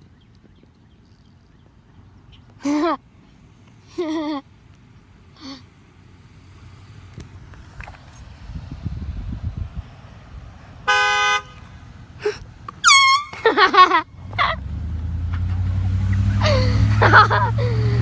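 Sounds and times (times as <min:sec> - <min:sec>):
car horn honk: 0:10.9 - 0:11.6, 0:12.8 - 0:13.6
car engine running: 0:14.1 - 0:18.0.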